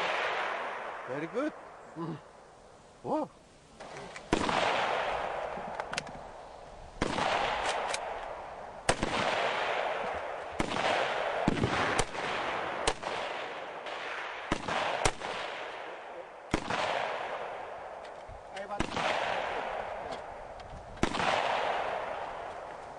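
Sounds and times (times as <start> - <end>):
gunshots: 4.3 - 5.6, 7.0 - 8.2, 8.9 - 17.9, 18.6 - 20.2, 21.0 - 22.5
rolling gunshot echo: 4.3 - 6.0, 7.0 - 17.8, 18.7 - 20.1, 21.0 - 22.5.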